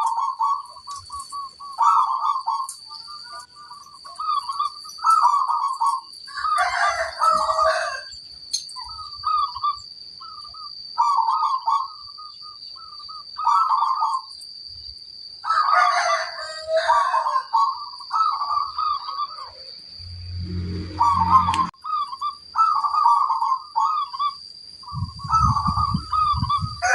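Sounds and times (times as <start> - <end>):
doves cooing: 0.0 - 8.2, 8.8 - 14.3, 15.5 - 26.9
steady high-pitched whine: 17.4 - 26.9.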